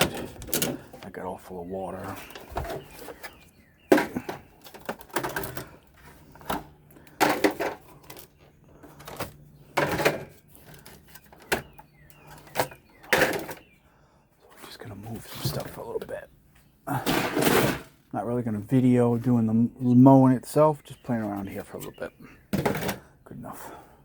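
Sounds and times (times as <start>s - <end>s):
metal and plastic objects clattering: 0.0s - 1.2s, 1.9s - 13.8s, 16.9s - 18.0s, 21.2s - 23.1s.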